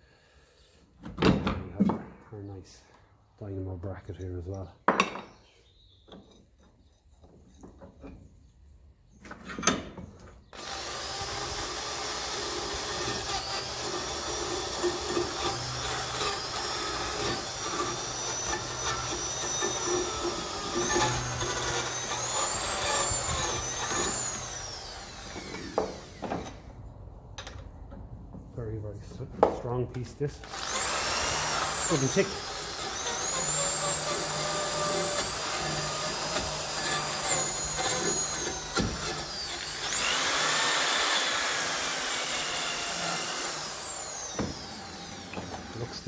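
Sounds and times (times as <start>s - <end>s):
power tool whining on metal: 10.4s - 26.7s, 30.4s - 46.0s.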